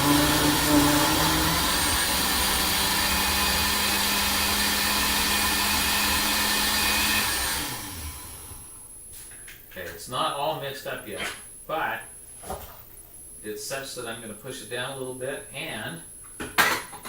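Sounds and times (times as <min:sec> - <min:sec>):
blender motor running: 0:00.0 - 0:08.8.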